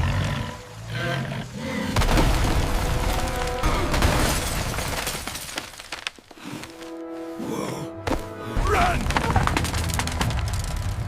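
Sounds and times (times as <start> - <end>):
background music: 6.4 - 11.0.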